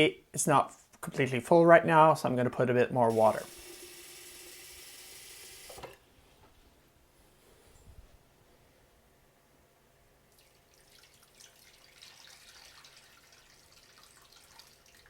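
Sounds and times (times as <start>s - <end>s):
water pouring into a pot: 10.3s - 15.0s.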